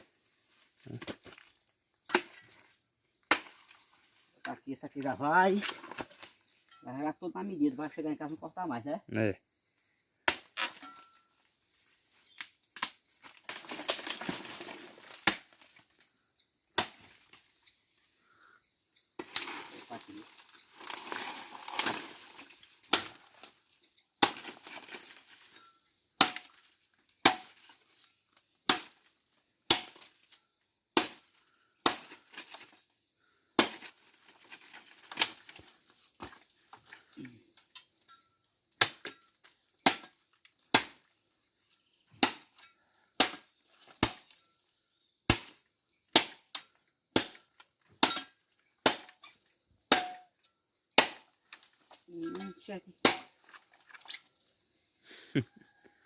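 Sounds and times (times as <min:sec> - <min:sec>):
firewood being chopped: 0:01.0 - 0:02.6, 0:03.2 - 0:03.7, 0:10.2 - 0:11.0, 0:12.3 - 0:15.8, 0:16.7 - 0:17.3, 0:20.4 - 0:23.6, 0:24.2 - 0:25.4, 0:26.2 - 0:27.8, 0:28.6 - 0:29.1, 0:29.7 - 0:30.1, 0:31.0 - 0:32.8, 0:33.6 - 0:36.9, 0:38.8 - 0:39.2, 0:39.8 - 0:41.1, 0:42.1 - 0:44.4, 0:45.3 - 0:49.2, 0:49.9 - 0:50.3, 0:51.0 - 0:52.4, 0:53.0 - 0:53.7.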